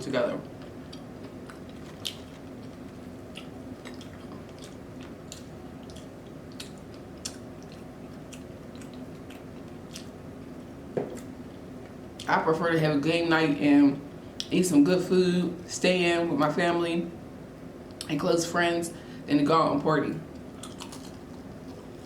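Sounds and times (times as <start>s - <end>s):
wet chewing mouth sounds: 0.8s - 10.2s, 20.6s - 22.0s.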